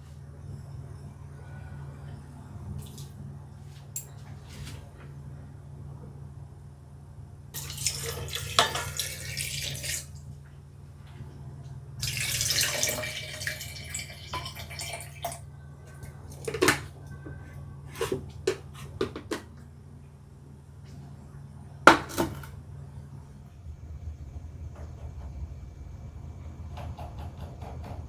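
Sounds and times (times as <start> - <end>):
tap water running: 7.6 - 10.1, 12.0 - 15.4, 23.4 - 28.0
steady low hum: 23.2 - 28.0.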